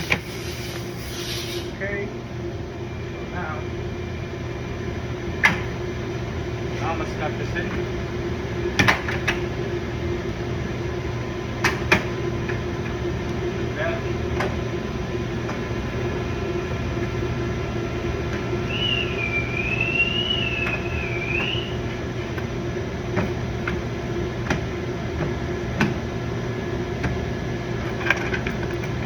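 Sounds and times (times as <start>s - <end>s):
steady background hum: 0.0s - 29.0s
wavering whistled tone: 18.6s - 21.9s.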